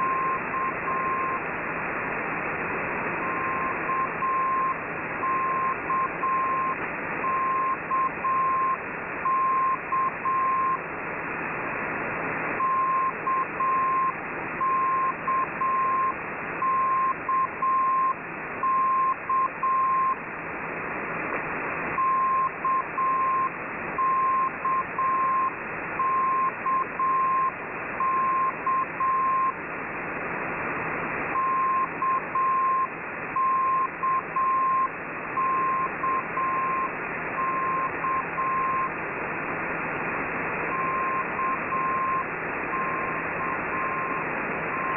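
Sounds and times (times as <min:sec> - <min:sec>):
radio static hiss: 0:00.0 - 0:44.9
morse code beeping tone: 0:03.2 - 0:10.8, 0:12.6 - 0:20.2, 0:22.0 - 0:29.6, 0:31.4 - 0:38.9, 0:40.7 - 0:44.9.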